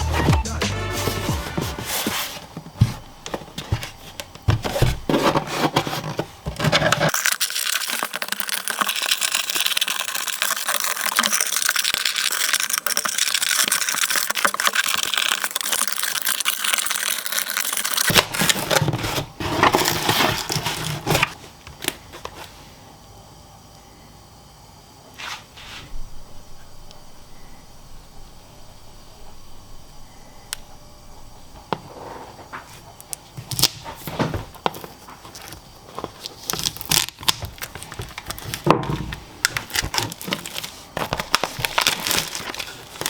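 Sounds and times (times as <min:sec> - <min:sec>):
box packaging clicks and scrapes: 0:00.0 - 0:22.5, 0:33.4 - 0:43.0
plastic wrap crinkling: 0:01.0 - 0:22.5, 0:33.4 - 0:43.0.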